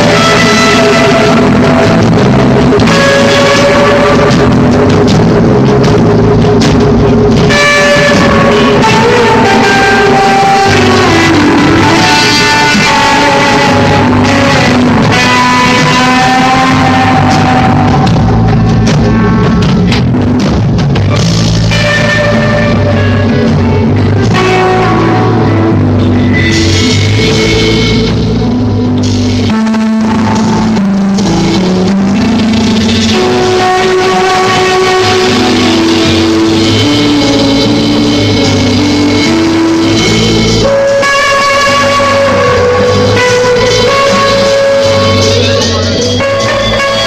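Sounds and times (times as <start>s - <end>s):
bass guitar: 0.0s - 47.0s
drum kit: 0.0s - 47.0s
lead guitar melody: 0.0s - 47.0s.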